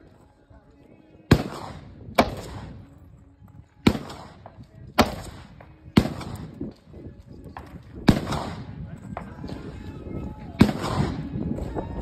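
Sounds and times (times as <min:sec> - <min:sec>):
gunshots with echo: 0:01.3 - 0:02.8, 0:03.8 - 0:06.6, 0:08.1 - 0:08.8, 0:10.6 - 0:11.3.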